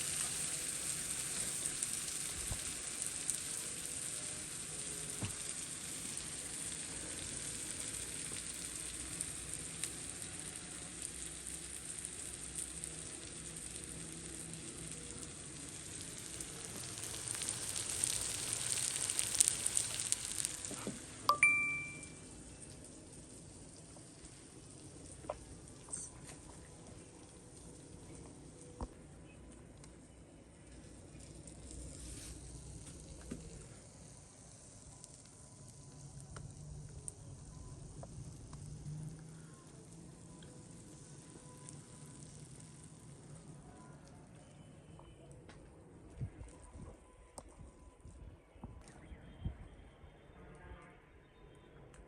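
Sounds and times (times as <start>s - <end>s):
eggs sizzling in hot oil: 0.0s - 44.7s.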